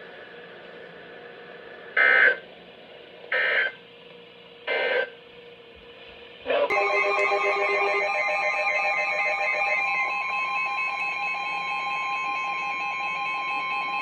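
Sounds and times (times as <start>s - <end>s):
loud steady tone: 6.7s - 14.0s.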